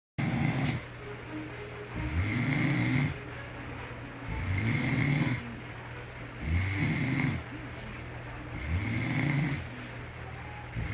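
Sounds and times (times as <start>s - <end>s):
man snoring: 0.2s - 0.9s, 2.0s - 3.2s, 4.2s - 5.6s, 6.4s - 7.5s, 8.5s - 9.7s.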